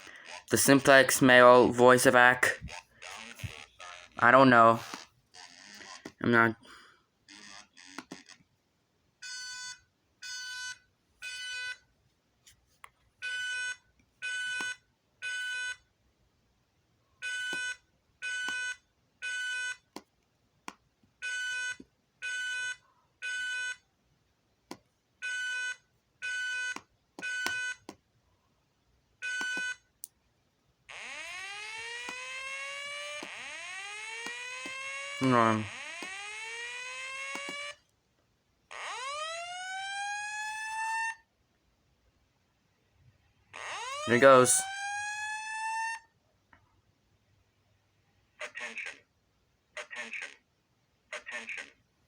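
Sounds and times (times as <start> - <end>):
fire alarm buzzy beeps: 9.2 - 11.8, 13.2 - 15.8, 17.2 - 19.8, 21.2 - 23.8, 25.2 - 27.9, 29.2 - 29.9, 30.9 - 37.8, 38.7 - 41.3, 43.6 - 46.1
slow whoop alarm tone: 30.9 - 37.8, 38.7 - 41.2, 43.6 - 46.1.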